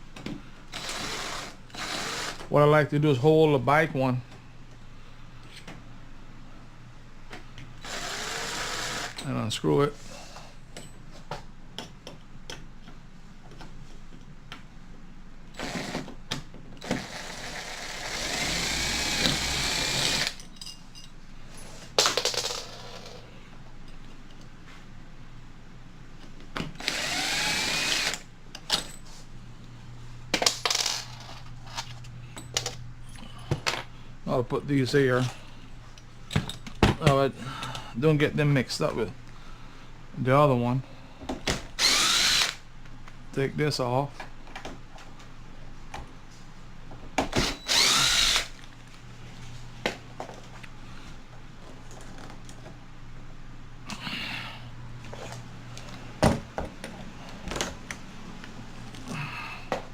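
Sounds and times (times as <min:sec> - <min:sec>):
drill motor whine: 0:07.8 - 0:09.3, 0:16.8 - 0:20.4, 0:26.8 - 0:28.2, 0:41.8 - 0:42.6, 0:47.3 - 0:48.6.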